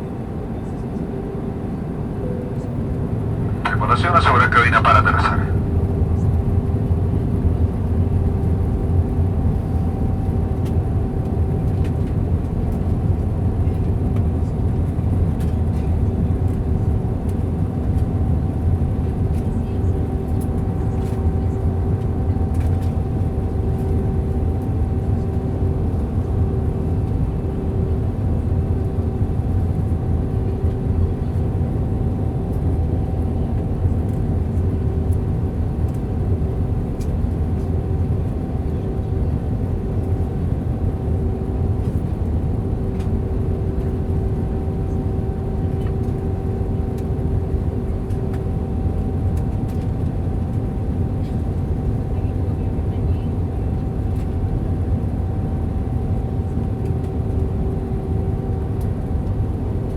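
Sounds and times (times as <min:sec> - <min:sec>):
aircraft engines rumbling: 0:00.0 - 0:59.9
steady mid-pitched hum: 0:02.1 - 0:05.7.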